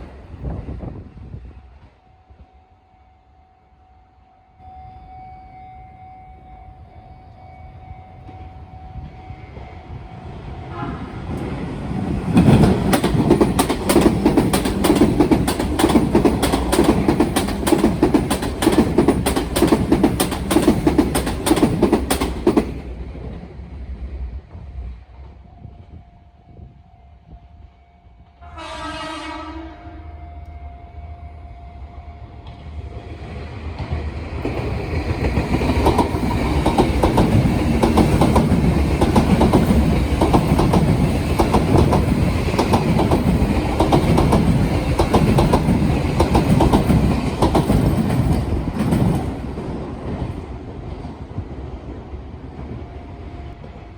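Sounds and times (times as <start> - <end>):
train approaching: 0.0 - 53.9
train horn blast: 10.6 - 11.4, 25.5 - 32.5
train wheels clacking over joints: 12.3 - 23.4, 33.8 - 51.2.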